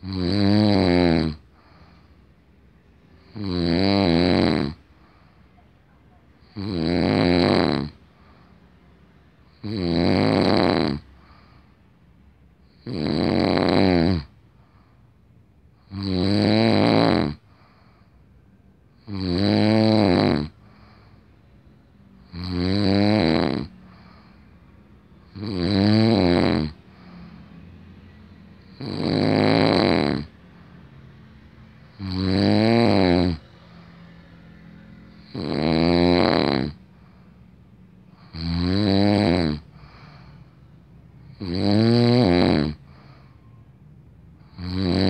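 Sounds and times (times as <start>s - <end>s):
man snoring: 0.0s - 2.1s, 3.2s - 5.1s, 6.4s - 8.5s, 9.4s - 11.6s, 12.6s - 14.4s, 15.8s - 17.9s, 19.0s - 21.2s, 22.2s - 24.4s, 25.2s - 27.4s, 28.6s - 30.3s, 31.8s - 33.9s, 35.1s - 37.2s, 38.1s - 40.5s, 41.2s - 43.3s, 44.4s - 45.0s.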